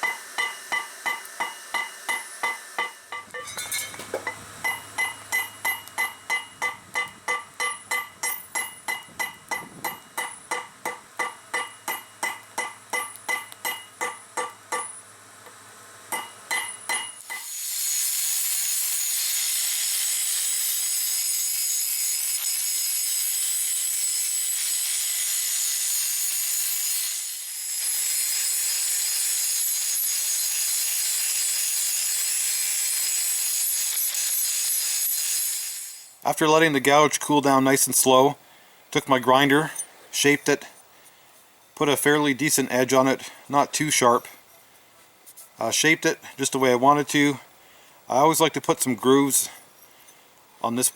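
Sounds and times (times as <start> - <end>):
hammer ringing on steel: 0.0 - 15.0, 16.1 - 17.4
grinder grinding steel: 0.0 - 36.2.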